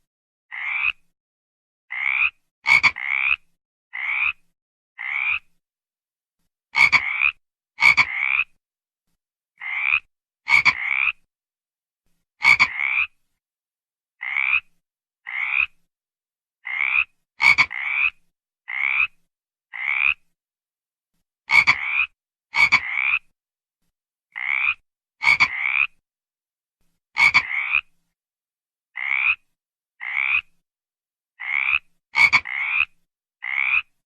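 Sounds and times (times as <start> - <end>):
frog croaking: 0.5 - 1.1, 1.9 - 4.4, 5.0 - 5.5, 6.8 - 8.6, 9.6 - 11.3, 12.4 - 13.2, 14.2 - 15.8, 16.6 - 20.3, 21.5 - 23.3, 24.3 - 26.0, 27.2 - 27.9, 29.0 - 30.5, 31.4 - 34.0.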